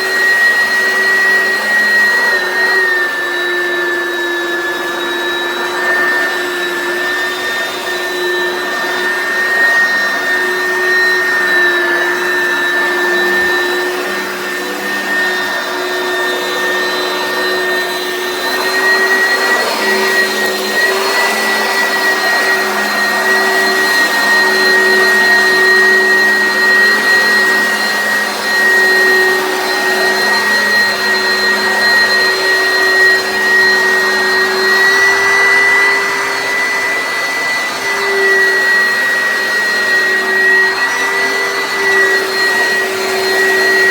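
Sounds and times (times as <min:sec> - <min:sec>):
vacuum cleaner running: 0:00.0 - 0:43.9.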